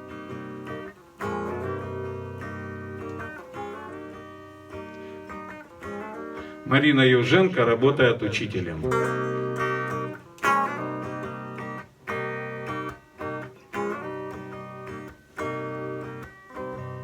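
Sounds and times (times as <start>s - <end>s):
acoustic guitar chords ringing: 0.0s - 17.0s.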